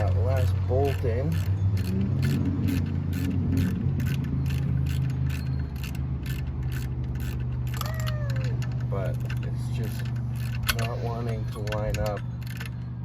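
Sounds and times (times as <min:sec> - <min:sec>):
ratchet wrench clicking: 0:00.0 - 0:13.0
steady low hum: 0:00.0 - 0:13.0.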